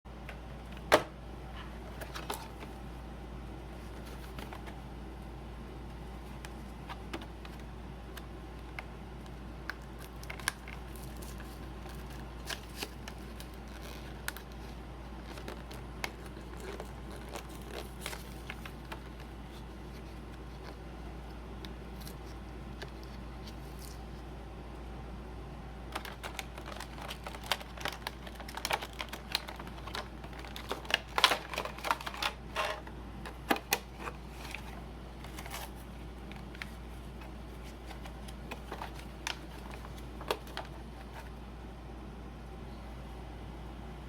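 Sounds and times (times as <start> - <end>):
steady low hum: 0.1 - 44.0
packaging clicks and crinkles: 6.4 - 20.8, 25.9 - 41.3.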